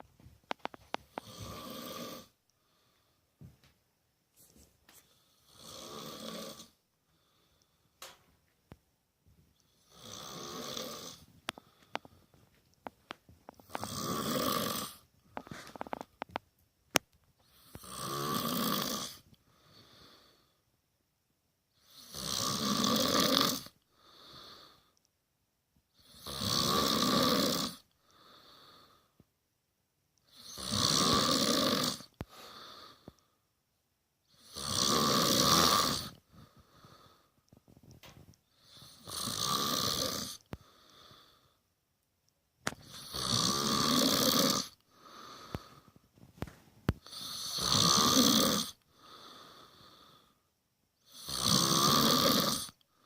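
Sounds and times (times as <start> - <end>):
man snoring: 1.1 - 2.4, 5.3 - 6.8, 9.7 - 11.7, 13.6 - 16.0, 17.5 - 20.4, 21.8 - 24.8, 26.0 - 29.0, 30.3 - 33.1, 34.3 - 37.2, 38.5 - 41.4, 42.8 - 45.9, 47.0 - 50.4, 51.0 - 52.8.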